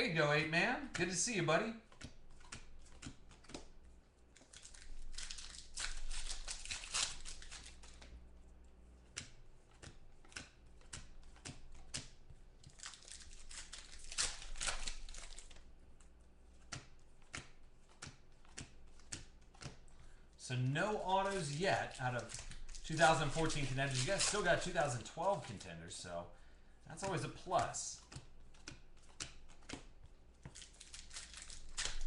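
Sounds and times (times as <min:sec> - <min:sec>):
cards clicking and snapping: 0:01.9 - 0:08.2, 0:09.0 - 0:15.7, 0:16.5 - 0:20.2, 0:21.2 - 0:25.6, 0:26.9 - 0:32.0
foil wrappers tearing and crinkling: 0:04.4 - 0:08.1, 0:12.6 - 0:15.6, 0:20.9 - 0:25.6, 0:30.4 - 0:32.0.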